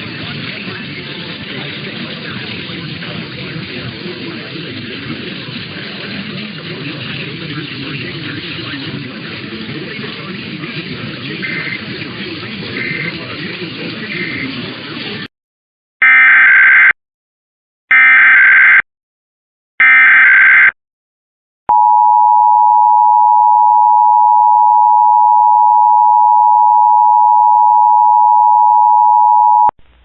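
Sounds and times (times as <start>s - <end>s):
steady two-tone attention signal: 21.7s - 29.7s.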